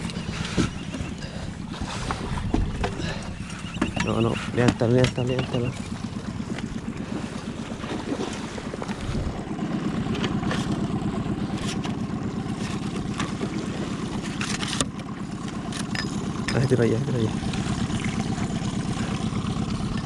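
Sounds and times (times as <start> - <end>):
wind on microphone: 0.0 - 4.8, 8.8 - 9.5
outboard motor running: 0.0 - 20.0.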